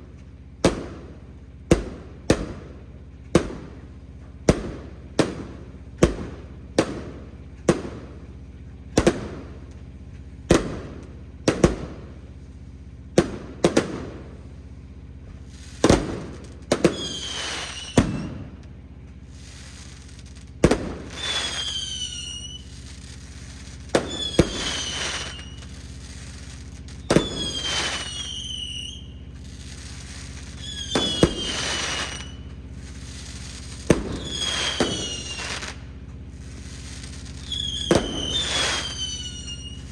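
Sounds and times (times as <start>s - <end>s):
fireworks bangs: 0.6s - 12.3s, 13.1s - 14.6s, 15.3s - 39.9s
firework whistles: 15.2s - 39.9s.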